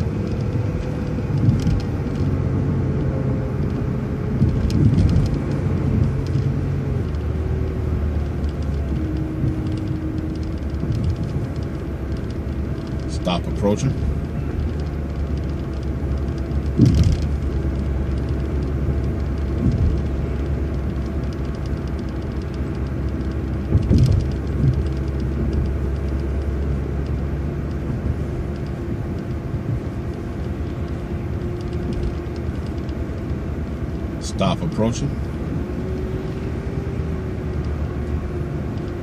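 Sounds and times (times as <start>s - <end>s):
bus engine and road rumble: 0.0s - 39.0s
rattling knocks: 14.7s - 20.2s.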